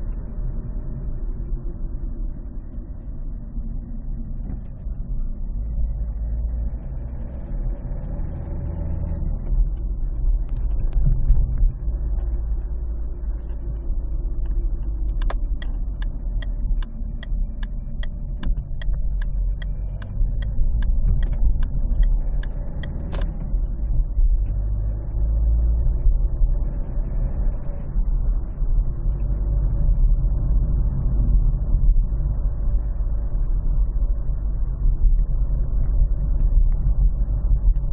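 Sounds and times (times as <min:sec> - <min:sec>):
diesel engine rumbling: 0:00.0 - 0:37.9
regular engine ticking: 0:09.6 - 0:24.6.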